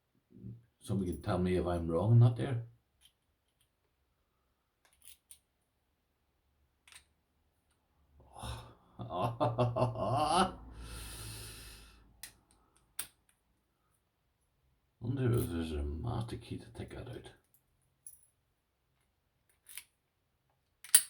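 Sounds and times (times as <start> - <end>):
breathy sigh: 8.2 - 9.0, 10.2 - 12.2
man murmuring: 8.2 - 10.7.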